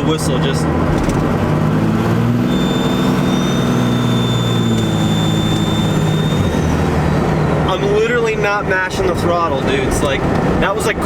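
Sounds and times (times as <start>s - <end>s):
diesel engine pulling: 0.0s - 11.0s
turbo whistle: 2.3s - 7.0s.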